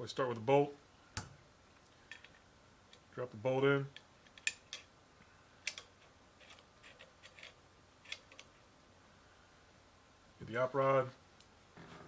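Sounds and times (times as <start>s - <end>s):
metal gun parts clicking: 3.9s - 4.9s, 5.6s - 8.6s.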